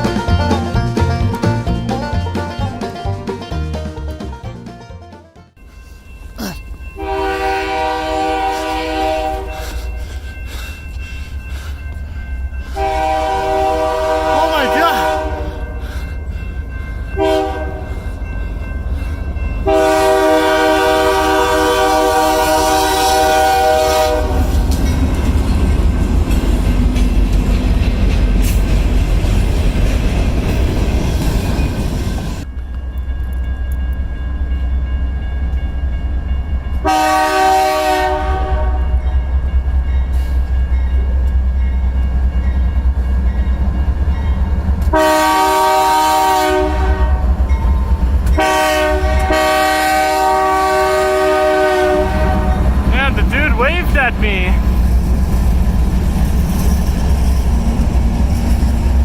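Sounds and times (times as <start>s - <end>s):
locomotive engine rumbling: 0.0s - 34.3s, 47.1s - 59.0s
locomotive air horn blasts: 7.0s - 9.7s, 12.8s - 15.8s, 17.2s - 17.9s, 19.6s - 24.4s, 36.8s - 38.9s, 44.9s - 47.2s, 48.4s - 53.9s
train wheels clattering on rails: 24.3s - 34.1s.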